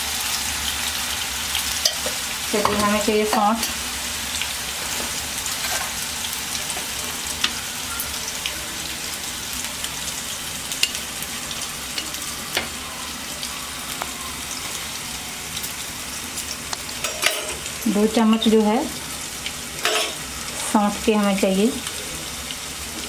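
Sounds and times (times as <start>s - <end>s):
paste sizzling in a pan: 0.0s - 23.0s.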